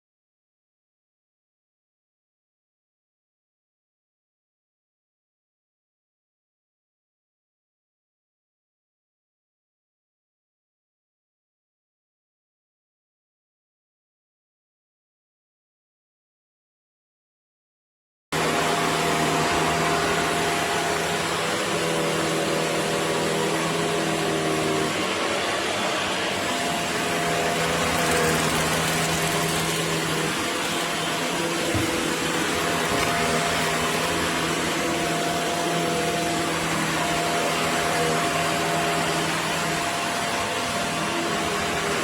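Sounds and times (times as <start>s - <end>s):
vacuum cleaner running: 18.4s - 42.0s.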